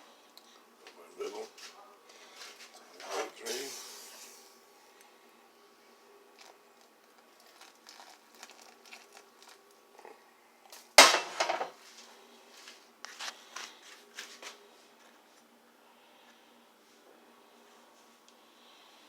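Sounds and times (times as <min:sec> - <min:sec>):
kitchenware clinking: 0:11.0 - 0:11.8.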